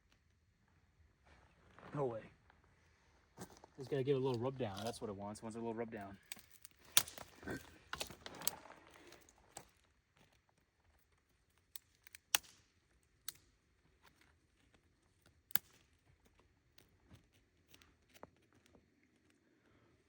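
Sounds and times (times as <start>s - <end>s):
flint and steel striking: 6.2s - 8.6s, 11.6s - 13.5s.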